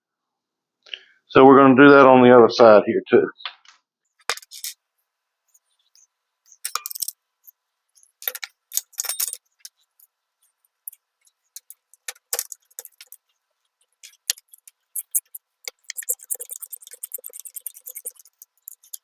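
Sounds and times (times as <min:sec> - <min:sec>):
metal hardware clinking: 0:04.3 - 0:04.8, 0:06.5 - 0:07.2, 0:08.0 - 0:10.1, 0:10.9 - 0:13.2, 0:14.0 - 0:19.0.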